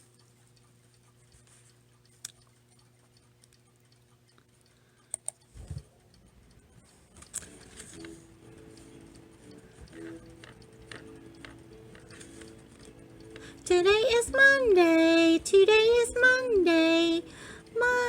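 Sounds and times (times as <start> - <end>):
faint instrumental backing track: 0.0 - 18.0.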